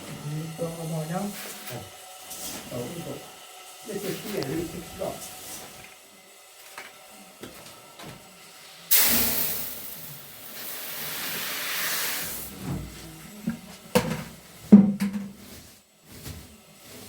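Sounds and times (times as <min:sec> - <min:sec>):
loud hissing rush: 0:08.8 - 0:12.5.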